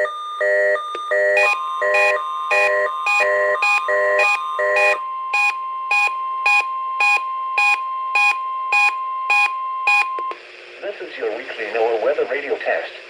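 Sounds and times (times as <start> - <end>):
radio receiver alert beeping: 0.0 - 10.3
steady warning alarm tone: 0.0 - 10.3.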